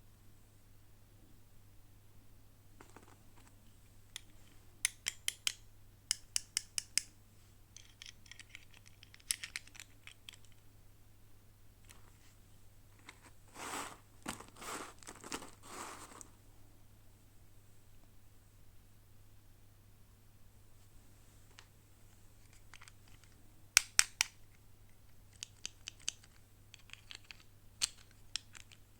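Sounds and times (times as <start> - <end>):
packaging crinkling: 13.1 - 16.3.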